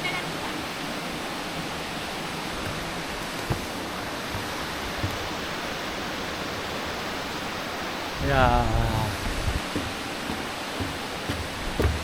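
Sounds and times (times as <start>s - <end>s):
stream rushing over rocks: 0.0s - 12.0s
low bumps: 2.6s - 5.6s, 9.0s - 12.0s.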